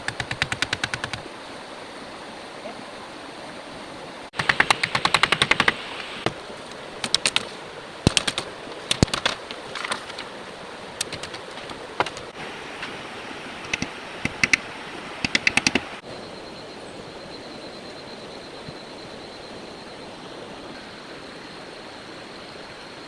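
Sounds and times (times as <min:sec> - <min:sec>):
rapid clicking: 0:00.0 - 0:01.2, 0:04.4 - 0:05.8, 0:07.0 - 0:10.2, 0:11.0 - 0:12.4, 0:15.2 - 0:15.9
rushing rain or water: 0:00.0 - 0:23.0.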